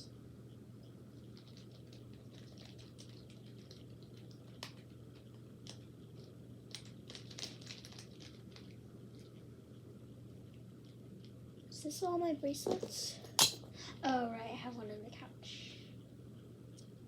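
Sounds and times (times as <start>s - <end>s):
fidget toys clicking and rustling: 1.2s - 9.3s.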